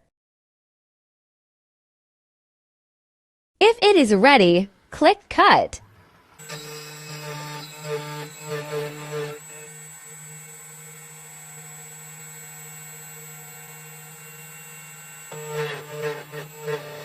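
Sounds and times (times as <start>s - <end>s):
key cutting machine whining: 5.8s - 17.0s.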